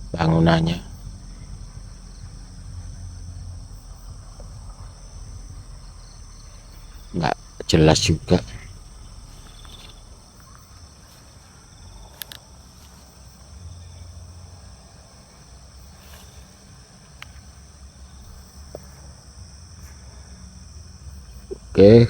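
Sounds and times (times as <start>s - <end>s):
low rumble: 0.0s - 16.5s, 18.0s - 19.7s
crickets and insects chirping: 0.0s - 22.0s
faint clicks: 0.8s - 13.5s, 16.0s - 17.6s.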